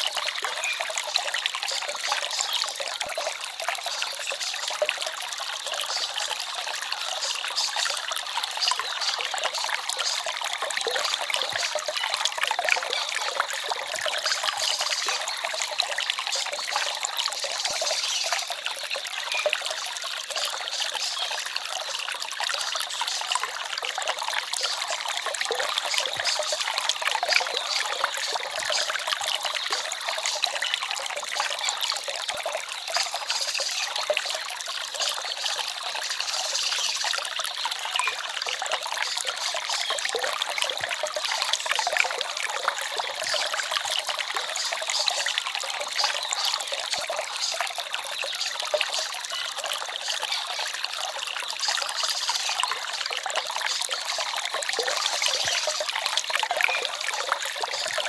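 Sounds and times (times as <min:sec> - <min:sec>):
stream flowing and trickling: 0:00.0 - 0:58.0.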